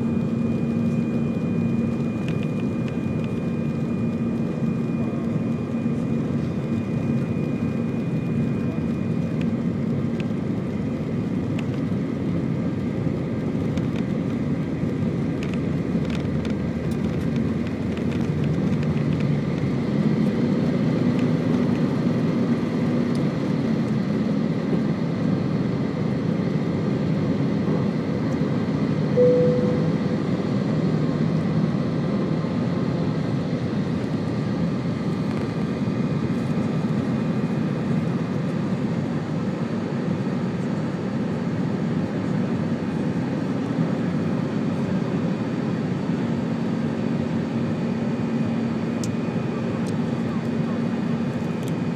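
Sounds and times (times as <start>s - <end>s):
short high tone: 29.2s - 30.4s.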